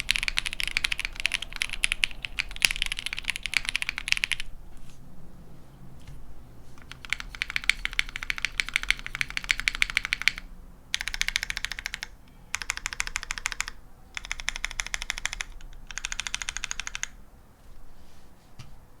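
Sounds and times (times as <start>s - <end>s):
mechanical keyboard typing: 0.0s - 4.5s, 6.8s - 17.2s.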